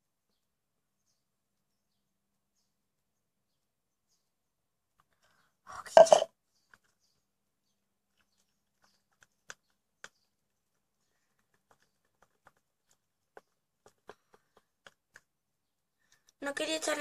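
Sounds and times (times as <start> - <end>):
utensil tapping containers: 5.9 - 6.3.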